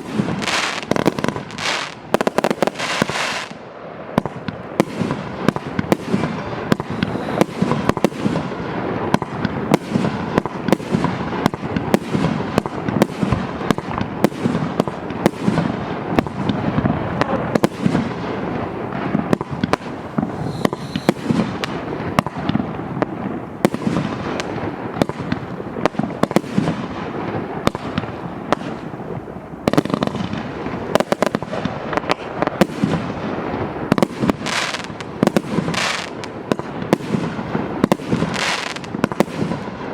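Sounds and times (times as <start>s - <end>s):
firework shots: 0.0s - 39.9s
bursting firework shells: 5.0s - 8.5s, 9.2s - 26.9s.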